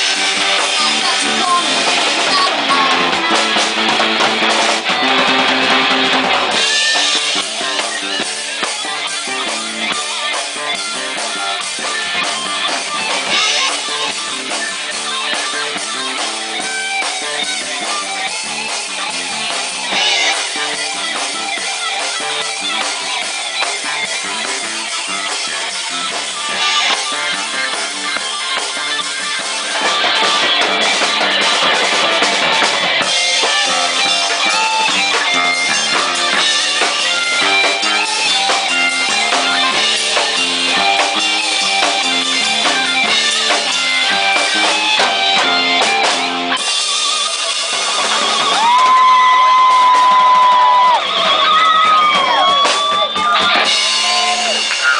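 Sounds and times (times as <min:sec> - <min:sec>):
rock band playing live: 0:00.0 - 0:54.9.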